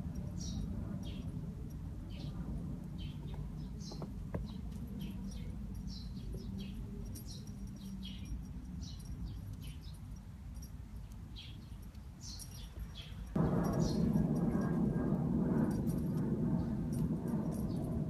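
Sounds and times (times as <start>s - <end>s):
steady low rumble: 0.0s - 10.8s, 12.4s - 18.0s
small birds chirping: 0.3s - 1.4s, 2.0s - 14.1s.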